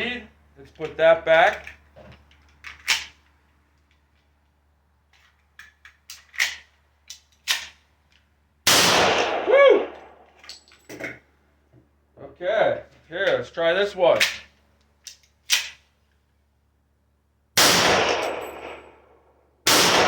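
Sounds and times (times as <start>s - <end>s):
pistol shot: 8.7s - 9.5s, 17.6s - 19.0s, 19.6s - 20.0s
person shouting: 9.4s - 9.9s.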